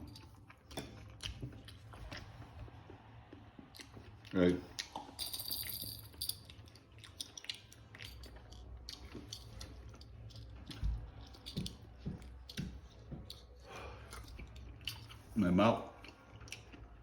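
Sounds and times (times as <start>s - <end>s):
chewing and wet mouth sounds: 0.0s - 5.2s, 6.1s - 17.0s.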